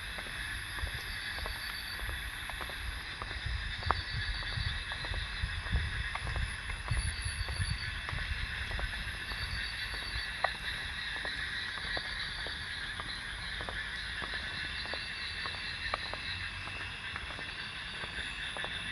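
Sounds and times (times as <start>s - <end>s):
wind rumble on microphone: 0.0s - 15.0s
crickets trilling: 0.0s - 18.9s.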